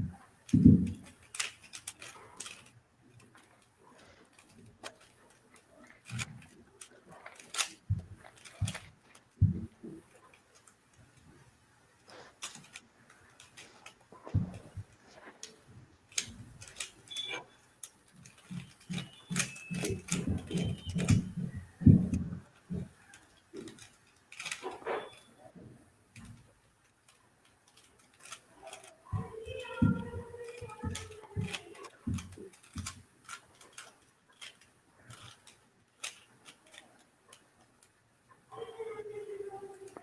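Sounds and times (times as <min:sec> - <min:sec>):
plastic clicks of puzzle cube: 0:00.2 - 0:25.4, 0:26.1 - 0:38.7
person speaking: 0:28.2 - 0:32.9, 0:38.5 - 0:40.0.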